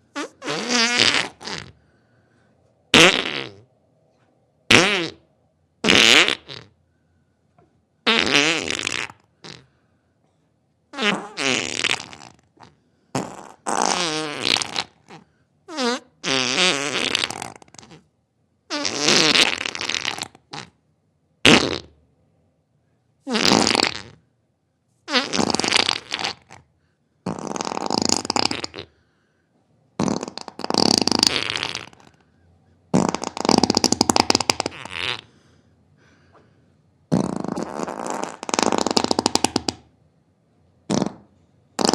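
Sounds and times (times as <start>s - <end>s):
farts: 0.1s - 1.8s, 2.9s - 3.7s, 4.7s - 6.8s, 8.0s - 9.7s, 10.9s - 18.1s, 18.7s - 20.8s, 21.4s - 22.0s, 23.3s - 24.2s, 25.1s - 28.9s, 30.0s - 32.2s, 32.9s - 35.3s, 37.1s - 39.9s, 40.9s - 41.9s.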